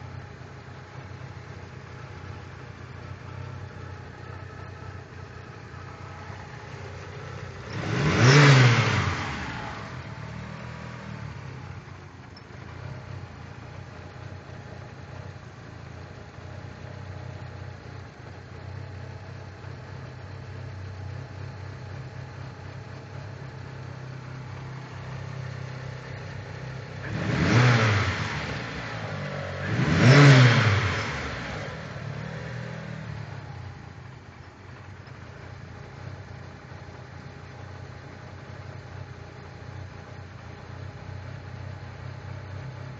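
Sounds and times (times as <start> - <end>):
car engine idling roughly: 0.0 - 8.1, 9.1 - 27.2, 33.4 - 42.9
engine revving: 5.8 - 11.9, 24.2 - 33.8.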